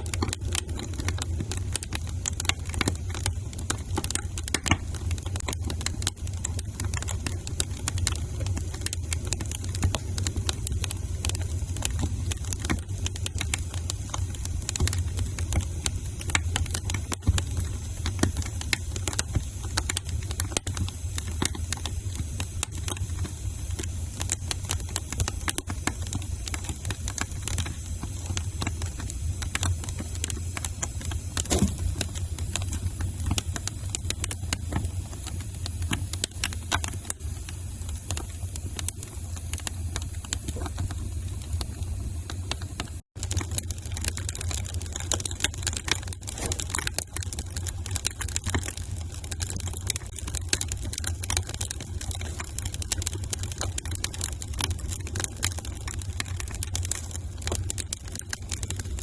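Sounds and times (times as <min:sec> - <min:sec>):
fire low rumble: 0:00.0 - 0:59.0
fire popping: 0:00.0 - 0:59.0
wood fire crackling: 0:00.0 - 0:59.0.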